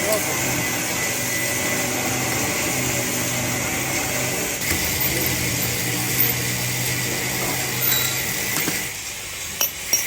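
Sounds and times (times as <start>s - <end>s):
machine humming and hissing: 0.0s - 10.0s.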